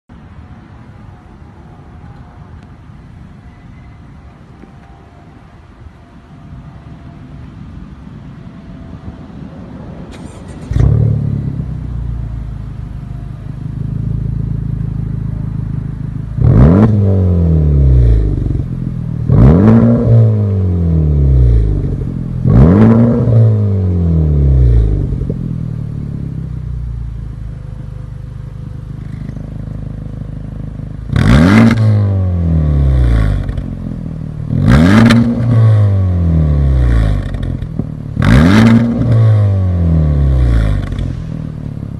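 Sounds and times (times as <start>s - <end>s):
car engine starting and idling: 4.4s - 41.9s
car engine revving: 10.1s - 41.9s.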